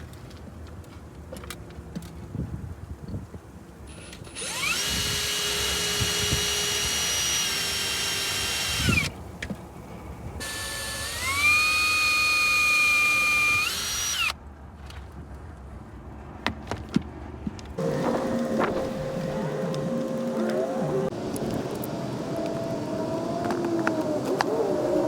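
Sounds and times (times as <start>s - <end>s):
cordless drill motor whining: 3.9s - 9.2s, 10.4s - 14.4s.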